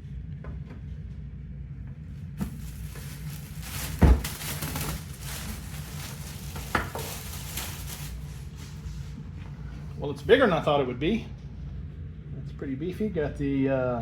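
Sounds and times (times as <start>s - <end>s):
heavy thud: 2.4s - 7.9s
packaging rustling and scraping: 2.4s - 9.2s.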